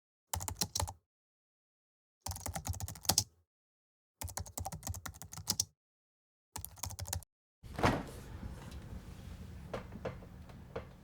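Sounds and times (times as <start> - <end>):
rapid keyboard typing clicks: 0.4 - 1.0, 2.3 - 3.3, 4.2 - 5.7, 6.6 - 7.2.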